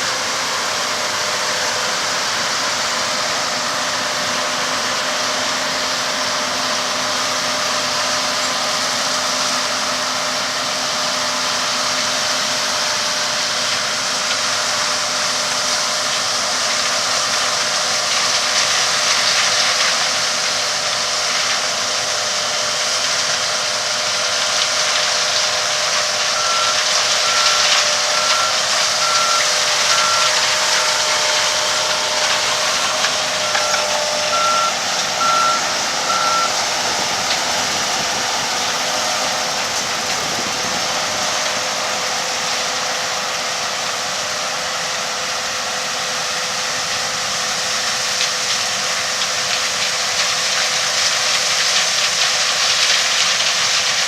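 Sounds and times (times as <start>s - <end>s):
harvest machinery engine running: 0.0s - 54.0s
reversing beeper: 25.7s - 42.4s.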